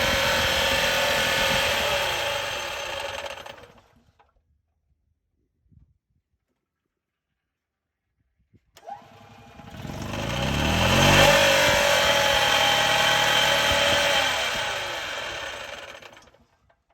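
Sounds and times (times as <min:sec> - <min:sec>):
golf cart engine running: 0:00.0 - 0:03.8, 0:08.9 - 0:16.3
whining grind from drive clutch: 0:00.0 - 0:04.0, 0:08.8 - 0:16.4.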